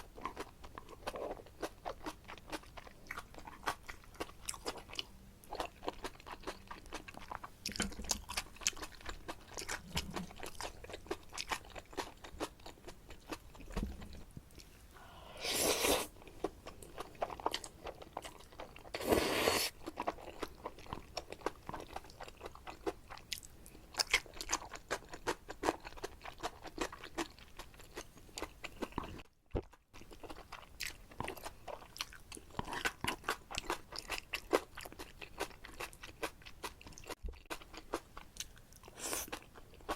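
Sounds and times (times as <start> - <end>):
wet chewing: 0.1 - 14.7, 15.7 - 39.9
noodle slurping: 15.4 - 16.1, 18.9 - 19.7.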